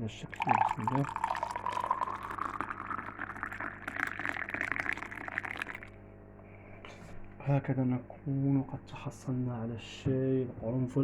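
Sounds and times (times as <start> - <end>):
water pouring into a cup: 0.2 - 6.0.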